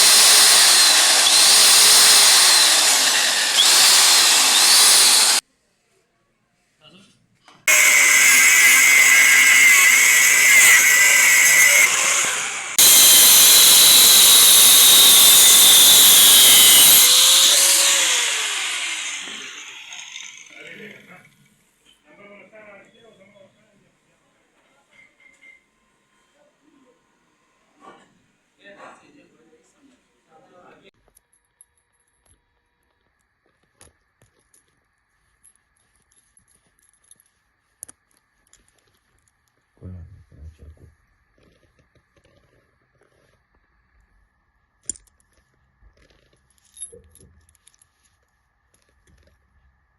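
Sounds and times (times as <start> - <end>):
power tool hissing on steel: 0.0 - 5.4, 7.7 - 20.6.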